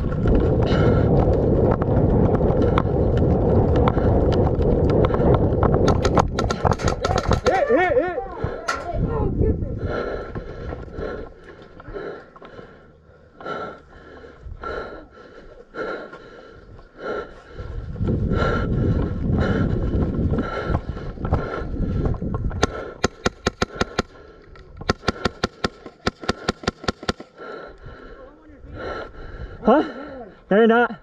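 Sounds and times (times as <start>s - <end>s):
heavy breathing inside helmet: 0.5s - 1.3s, 9.7s - 30.5s
airsoft gun shots: 5.8s - 7.6s, 22.6s - 24.1s, 24.8s - 27.3s.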